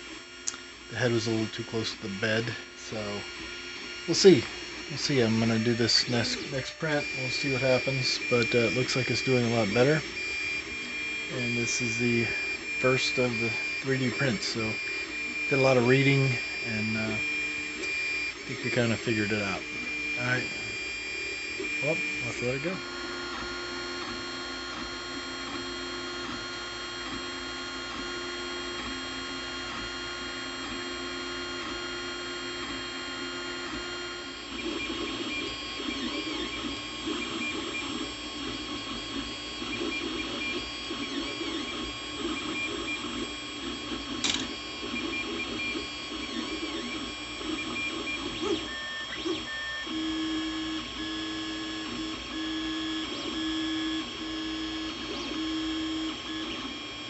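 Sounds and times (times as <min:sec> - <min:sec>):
printer stepper motors whining: 0:00.0 - 0:57.0
printer click: 0:44.2 - 0:44.6.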